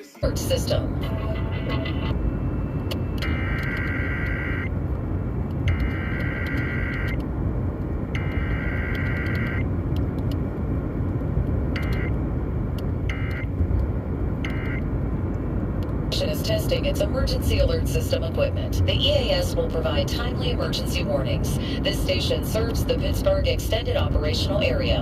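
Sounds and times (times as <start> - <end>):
low background rumble: 0.2 - 25.0.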